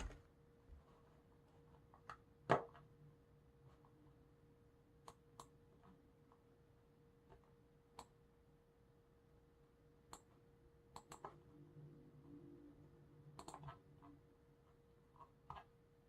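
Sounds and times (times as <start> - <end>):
mouse and keyboard clicks: 10.9 - 11.4, 13.4 - 14.1.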